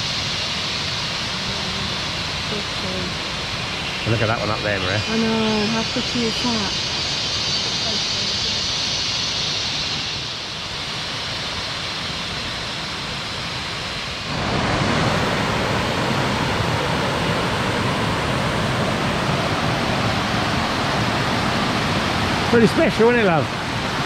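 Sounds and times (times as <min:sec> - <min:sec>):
waterfall rushing: 0:14.1 - 0:24.0.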